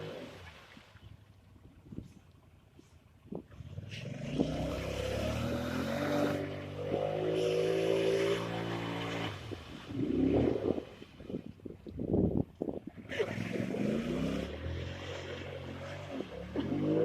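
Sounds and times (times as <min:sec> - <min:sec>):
atv engine revving: 0:03.7 - 0:10.8, 0:13.0 - 0:17.0.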